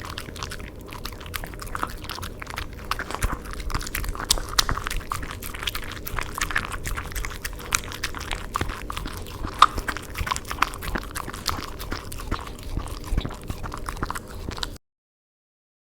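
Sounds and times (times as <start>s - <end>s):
puppy chewing: 0.0s - 14.8s.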